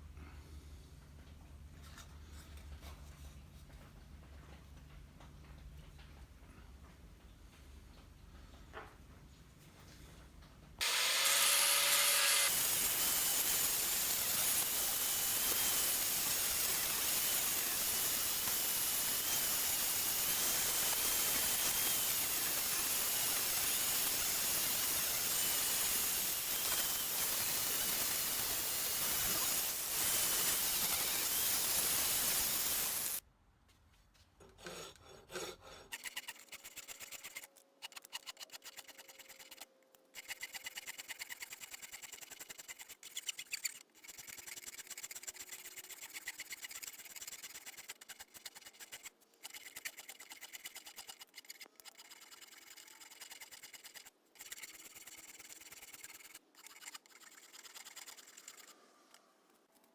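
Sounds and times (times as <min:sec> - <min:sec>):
fast rubbing strokes: 0:11.4 - 0:33.2, 0:35.9 - 0:59.2.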